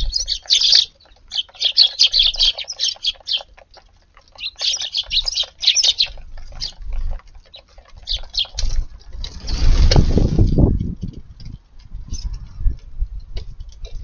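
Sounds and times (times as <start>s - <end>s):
sparrows chirping: 0.0s - 9.9s, 11.9s - 13.1s.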